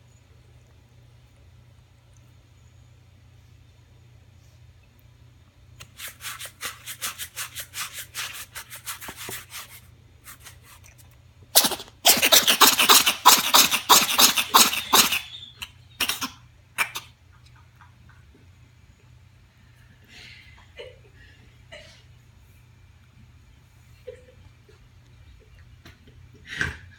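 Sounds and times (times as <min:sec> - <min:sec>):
rapid short sneezes: 0:11.6 - 0:17.0.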